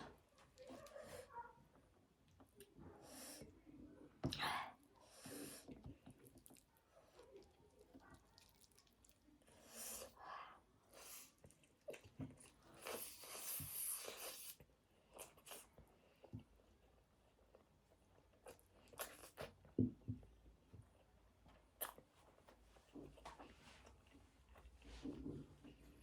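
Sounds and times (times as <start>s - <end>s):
person chewing food: 5.7s - 10.2s, 10.9s - 19.8s, 20.9s - 24.9s.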